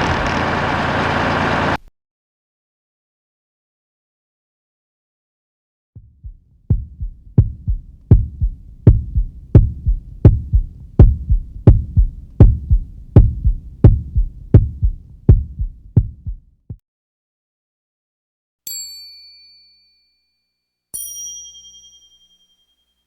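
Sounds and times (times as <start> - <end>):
low thumping heartbeat pulse: 6.0 - 16.8.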